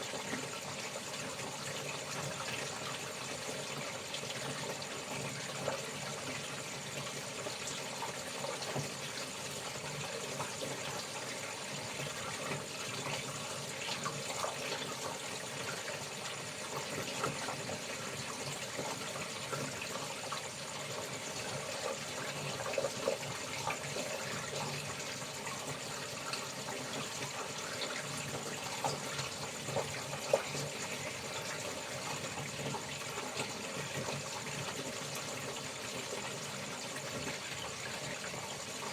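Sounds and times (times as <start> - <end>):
water running and splashing: 0.0 - 38.9.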